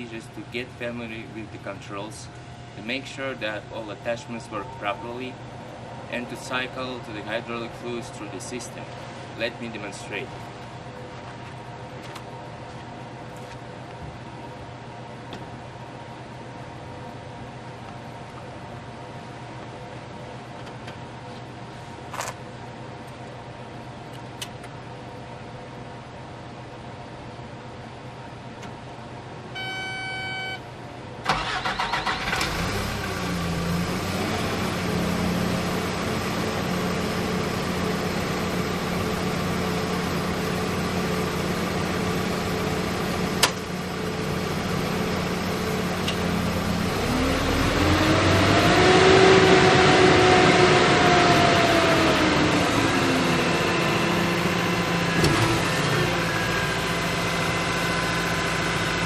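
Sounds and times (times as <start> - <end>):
short electronic tone: 29.6 - 30.6
diesel engine starting and idling: 31.2 - 59.0
engine revving: 31.3 - 37.8, 46.4 - 59.0.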